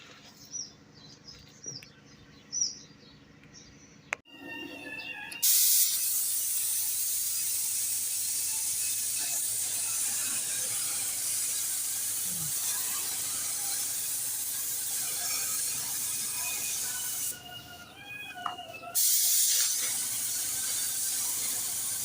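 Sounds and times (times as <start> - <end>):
paint spray gun hissing: 5.4 - 17.4, 19.0 - 22.0.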